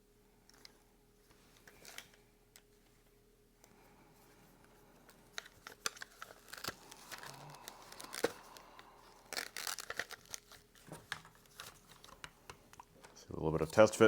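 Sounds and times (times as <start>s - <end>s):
scraping and rustling of holster: 4.2s - 13.9s.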